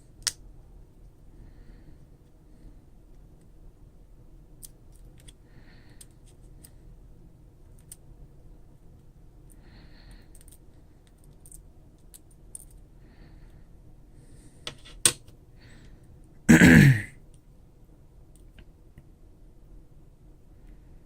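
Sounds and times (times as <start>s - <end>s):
small parts clicking and tapping: 0.0s - 1.2s, 4.5s - 6.9s, 7.6s - 8.2s, 8.8s - 13.6s, 14.6s - 16.3s, 18.2s - 19.2s
person clearing throat: 16.5s - 17.2s.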